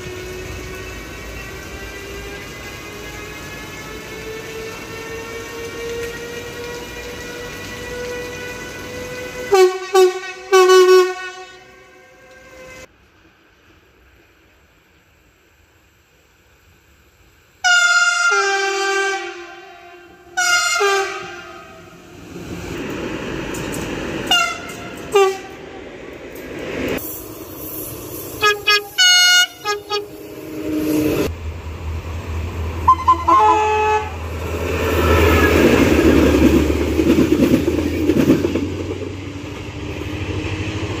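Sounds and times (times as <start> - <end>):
train rumbling past: 0.0 - 41.0
train horn blasts: 6.2 - 12.9, 17.6 - 21.9, 24.3 - 25.6, 28.4 - 30.4, 32.8 - 34.2.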